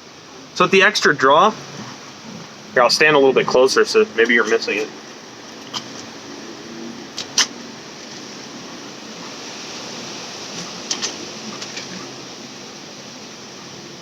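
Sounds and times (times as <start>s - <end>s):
steady background hiss: 0.0s - 14.0s.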